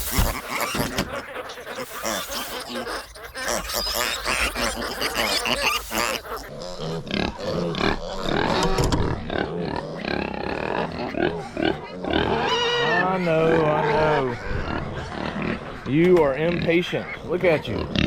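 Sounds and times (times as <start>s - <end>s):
scraping and rustling: 0.0s - 6.5s
farm animal grunting cries: 0.0s - 18.0s.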